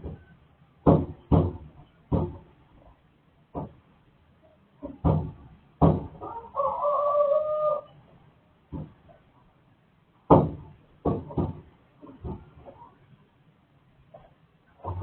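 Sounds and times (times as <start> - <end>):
sharp knocks: 0.8 - 2.5, 3.5 - 3.8, 4.8 - 6.2, 8.7 - 9.0, 10.3 - 12.6
rooster crowing: 6.2 - 7.9.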